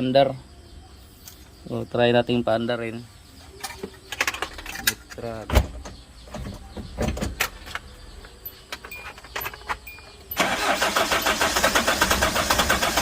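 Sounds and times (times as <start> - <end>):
starter motor cranking engine: 10.3 - 13.0.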